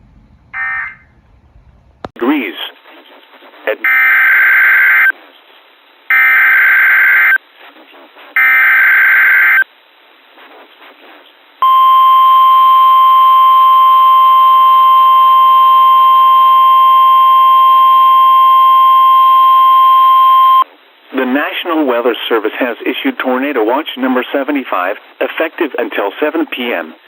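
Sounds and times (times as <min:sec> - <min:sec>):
steady warning alarm tone: 0:00.5 - 0:01.1, 0:11.6 - 0:20.6.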